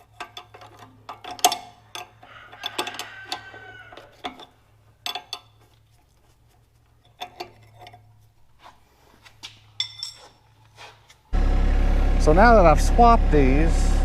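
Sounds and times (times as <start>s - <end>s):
wrench clinking on metal fittings: 0.0s - 8.4s, 9.4s - 10.7s
diesel engine running: 11.3s - 14.0s.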